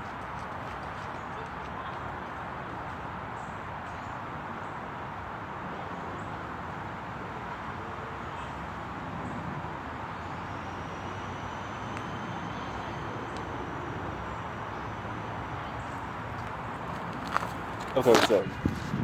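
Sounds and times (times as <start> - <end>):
distant traffic: 0.0 - 19.0
faint high thin whine: 10.1 - 15.8.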